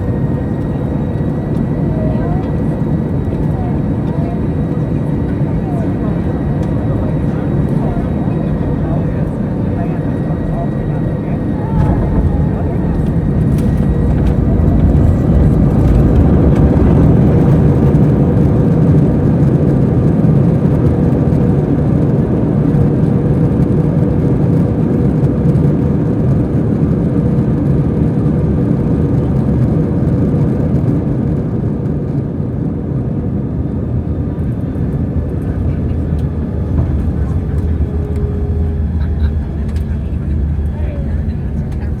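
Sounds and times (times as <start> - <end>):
aircraft cabin engine rumble: 0.0 - 42.0.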